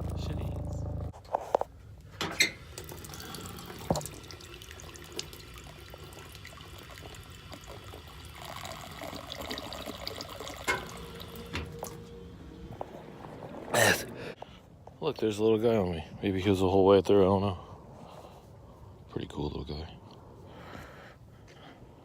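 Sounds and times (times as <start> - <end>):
water splashing from drinking fountain: 2.6 - 11.9.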